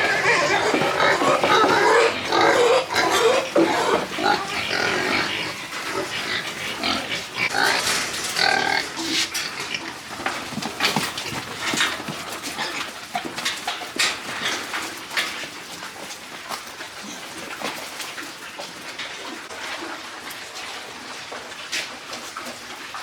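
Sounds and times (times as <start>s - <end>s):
piglets squealing and grunting: 0.0s - 10.1s.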